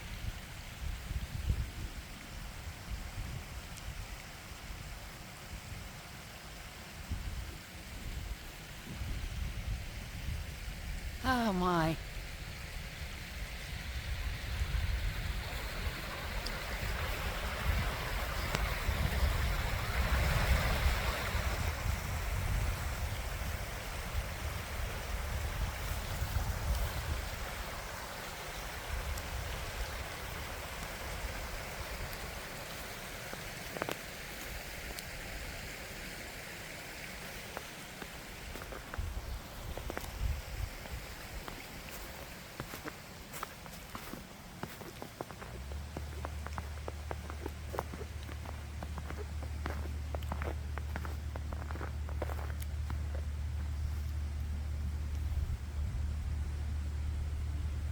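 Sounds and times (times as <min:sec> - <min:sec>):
creek water flowing: 0:11.4 - 0:57.9
low rumble: 0:45.6 - 0:57.9.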